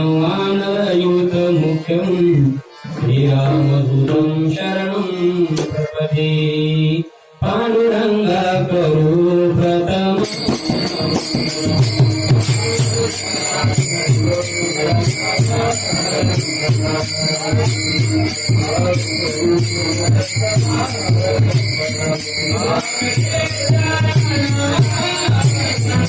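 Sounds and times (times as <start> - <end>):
jingling metal percussion: 10.1 - 26.0
steady drum beat: 10.3 - 26.0.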